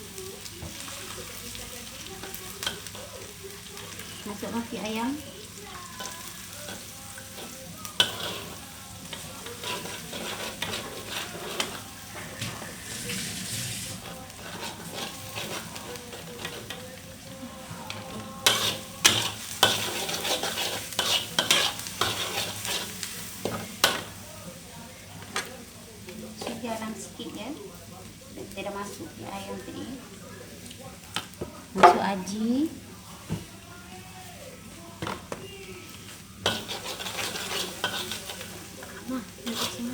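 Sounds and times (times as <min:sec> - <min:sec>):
onion sizzling in hot oil: 0:00.0 - 0:39.9
spoon clacking on a pan: 0:00.6 - 0:12.9, 0:14.0 - 0:24.2, 0:30.7 - 0:32.4, 0:36.4 - 0:39.9
spoon scraping a pan: 0:02.0 - 0:24.2, 0:35.0 - 0:39.9.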